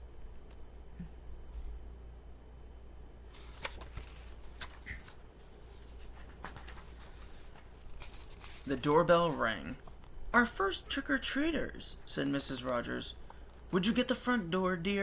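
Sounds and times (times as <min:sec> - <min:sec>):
low steady hum: 0:00.0 - 0:15.0
paper page rustling: 0:03.3 - 0:10.1.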